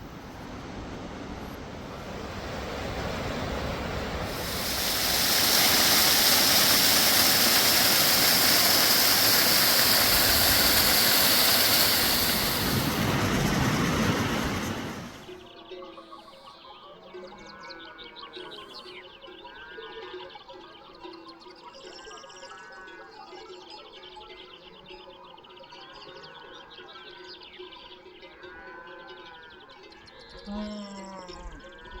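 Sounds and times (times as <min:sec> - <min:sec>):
fast-flowing water rushing: 0:00.0 - 0:15.3.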